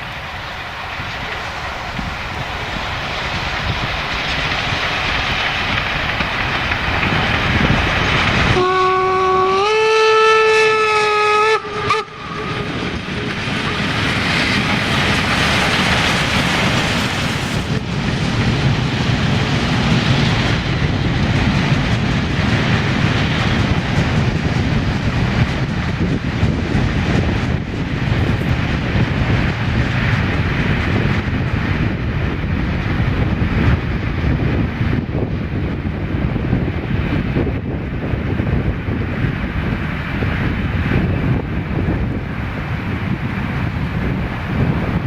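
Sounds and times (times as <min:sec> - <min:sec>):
steam train running past: 0:00.0 - 0:45.0
steam whistle: 0:08.6 - 0:12.9.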